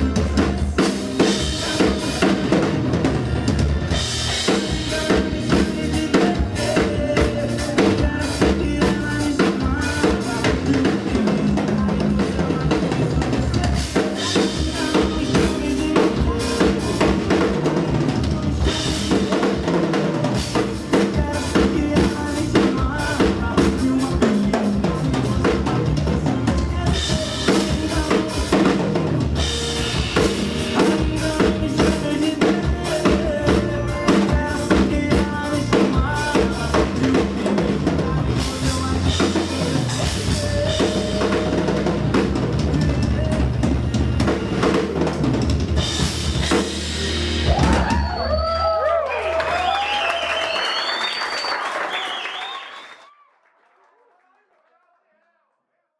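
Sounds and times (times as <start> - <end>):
drum kit groove: 0.0 - 48.6
recorded band backing track: 0.0 - 52.9.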